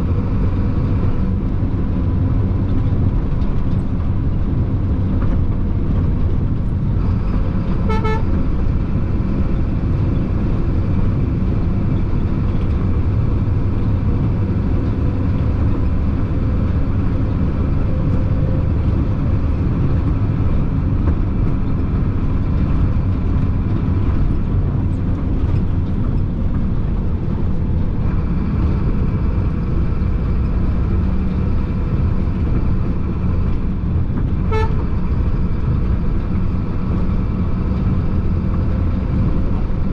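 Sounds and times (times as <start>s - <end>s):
truck engine and road rumble: 0.0s - 39.9s
truck horn toot: 7.8s - 8.4s, 34.5s - 35.0s.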